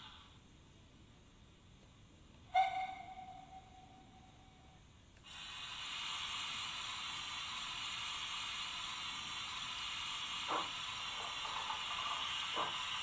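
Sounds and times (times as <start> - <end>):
short locomotive sounds: 2.5 - 4.5
steam hiss from small speaker: 5.2 - 13.0.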